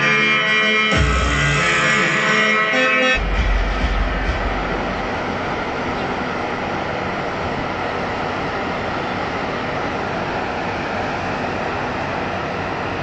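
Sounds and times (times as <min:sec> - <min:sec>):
music: 0:00.0 - 0:05.5
low rumble: 0:03.2 - 0:08.6
steady rushing noise: 0:03.2 - 0:13.0.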